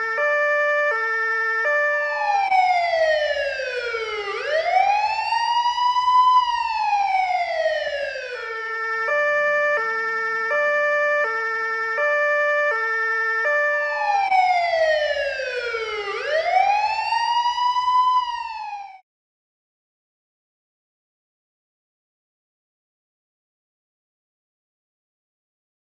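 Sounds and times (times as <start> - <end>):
police car siren: 0.0 - 19.0.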